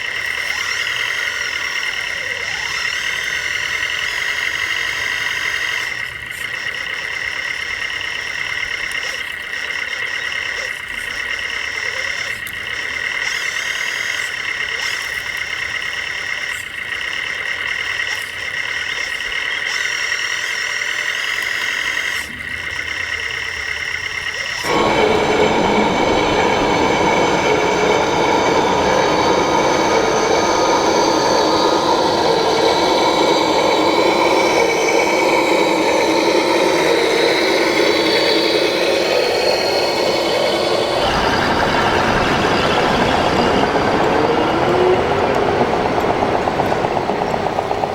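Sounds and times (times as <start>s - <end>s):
model vehicle electric motors whining: 22.9s - 47.9s.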